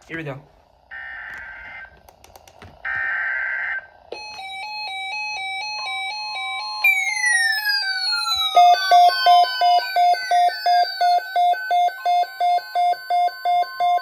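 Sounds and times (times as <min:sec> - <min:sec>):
electronic alert tone: 0:04.2 - 0:14.0.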